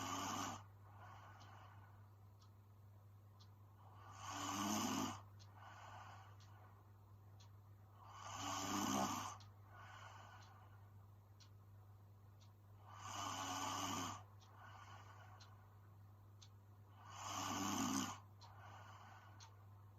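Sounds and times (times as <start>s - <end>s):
woman snoring: 0.0s - 0.7s, 3.9s - 5.2s, 8.0s - 9.4s, 12.9s - 14.2s, 17.0s - 18.2s
steady low hum: 0.0s - 19.9s.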